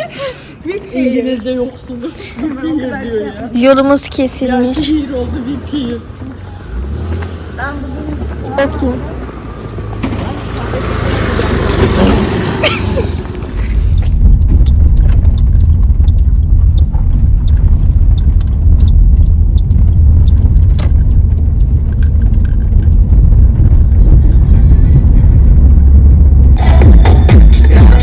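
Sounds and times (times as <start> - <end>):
vehicle low rumble: 0.0 - 28.0
small clicks and rattles: 13.5 - 24.0.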